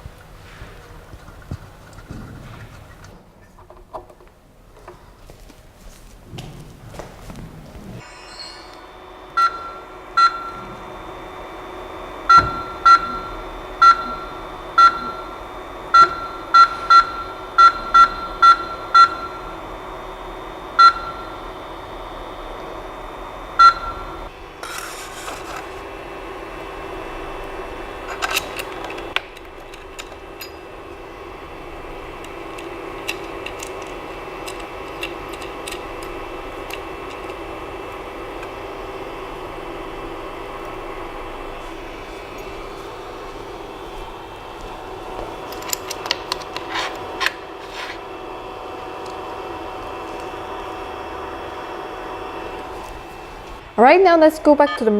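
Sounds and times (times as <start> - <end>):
machine humming: 0.0 - 54.9
short high buzzer beeps: 8.0 - 10.8, 12.3 - 19.5.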